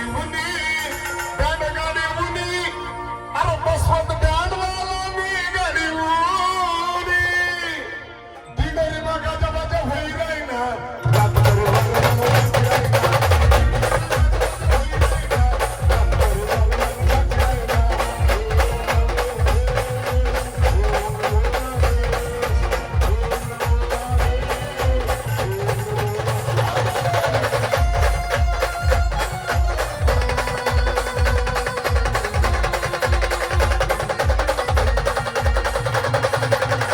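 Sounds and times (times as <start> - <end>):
wavering keyboard melody: 10.8 - 36.9
fast drum beat: 11.1 - 36.9.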